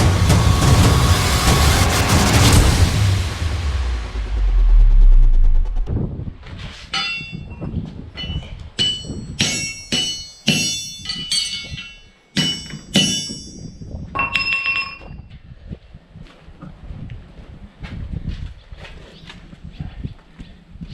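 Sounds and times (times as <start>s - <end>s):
deep rumble: 0.0s - 9.9s
hammer striking metal on anvil: 6.9s - 7.6s, 8.2s - 15.2s.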